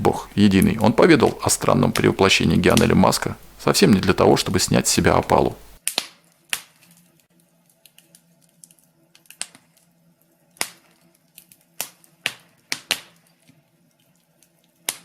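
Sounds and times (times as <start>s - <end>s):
faint steady hum: 0.0s - 5.8s
wood fire crackling: 0.0s - 15.0s.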